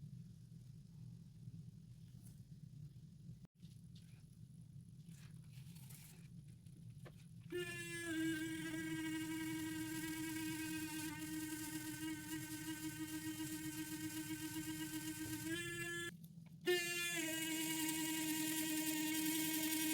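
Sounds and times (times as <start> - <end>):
small electric motor buzzing: 7.6 - 16.1, 16.7 - 19.9.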